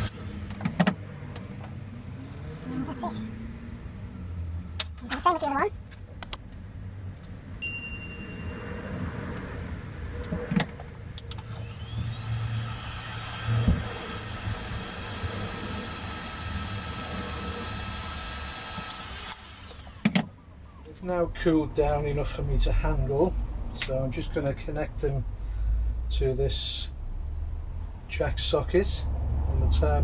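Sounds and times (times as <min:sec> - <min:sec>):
heat gun blowing: 0:11.4 - 0:20.1.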